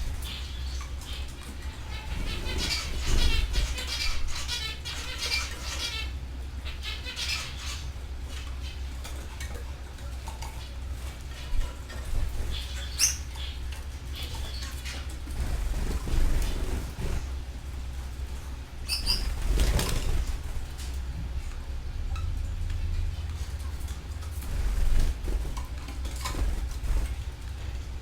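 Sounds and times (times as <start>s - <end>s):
wings fluttering: 0.0s - 6.1s, 10.3s - 21.4s, 23.4s - 28.0s
canaries chirping and trilling: 0.0s - 17.4s, 18.3s - 20.9s, 22.1s - 27.4s
steady low hum: 0.0s - 28.0s.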